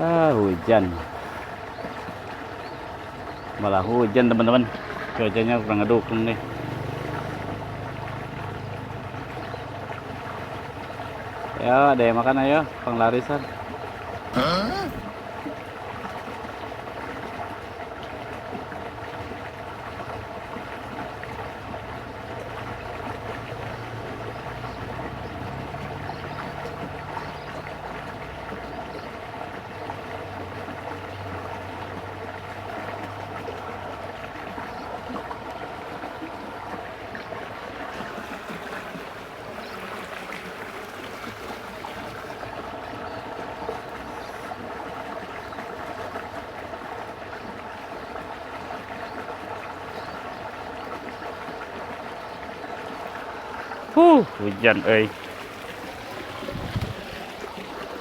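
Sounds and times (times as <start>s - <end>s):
water running: 3.6s - 10.9s, 14.4s - 15.1s, 37.8s - 44.6s, 52.8s - 58.0s.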